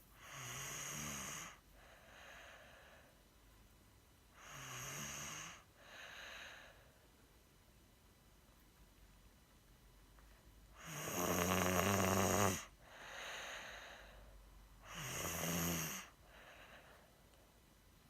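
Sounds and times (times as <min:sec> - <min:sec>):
soft breathing: 0:00.0 - 0:03.4, 0:05.2 - 0:07.3, 0:12.5 - 0:17.7
loud fluttering snore: 0:10.8 - 0:12.7.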